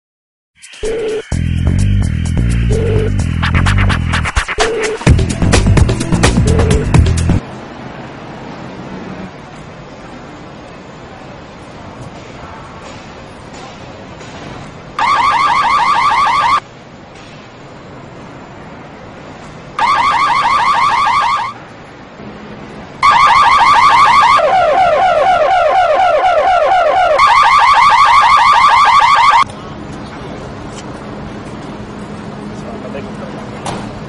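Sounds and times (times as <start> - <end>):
car alarm siren warbling: 15.0 - 16.6, 19.8 - 21.6, 23.0 - 29.5.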